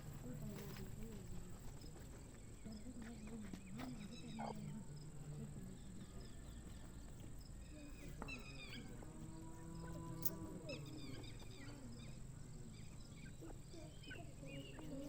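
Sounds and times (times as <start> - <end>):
francolins calling: 10.2 - 15.0.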